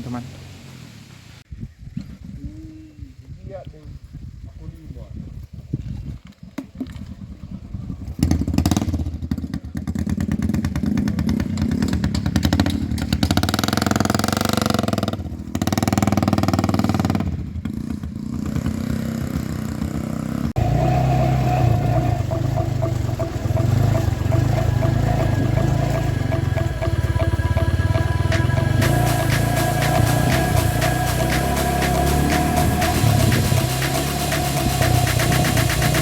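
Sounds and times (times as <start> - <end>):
motorcycle engine revving: 8.0 - 36.0.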